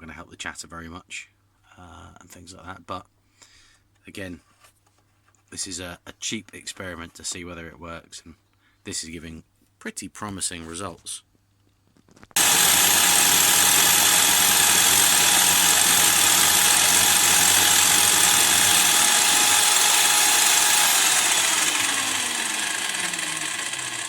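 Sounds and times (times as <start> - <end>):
drill motor spinning down: 12.4 - 24.0
drill motor whining: 12.4 - 24.0.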